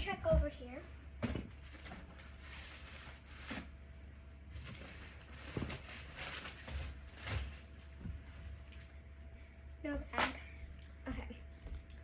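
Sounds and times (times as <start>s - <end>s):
rustling: 4.5s - 8.8s.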